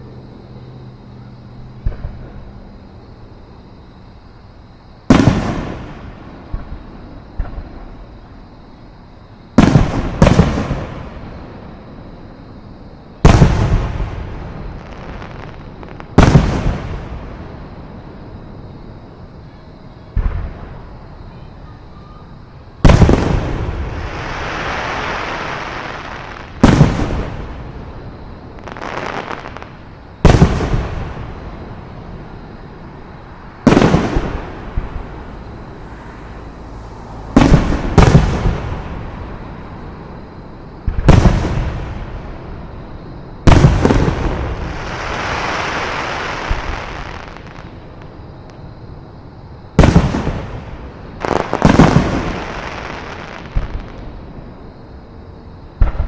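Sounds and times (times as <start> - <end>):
fireworks booming: 1.8 - 2.8, 5.0 - 8.5, 9.4 - 12.5, 13.1 - 48.6, 49.6 - 54.6, 55.8 - 56.0
fireworks hiss: 22.6 - 27.9, 28.5 - 32.3, 33.2 - 40.1, 43.5 - 48.2, 49.8 - 54.1.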